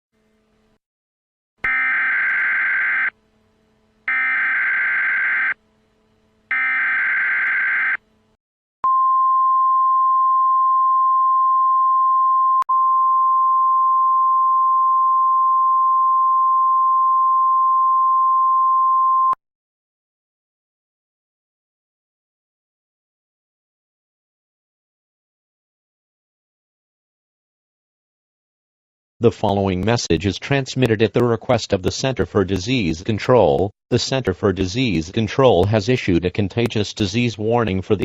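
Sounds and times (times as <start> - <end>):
steady attention tone: 1.6 - 8.2
buzzy digital data bursts: 1.7 - 3.1, 4.1 - 5.6.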